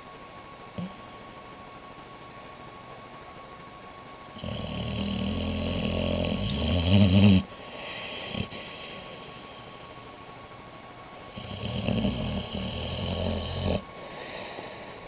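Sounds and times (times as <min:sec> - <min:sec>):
dog snoring: 0:04.3 - 0:09.9, 0:11.2 - 0:15.0
faint airy breath: 0:07.5 - 0:10.2, 0:13.9 - 0:15.0.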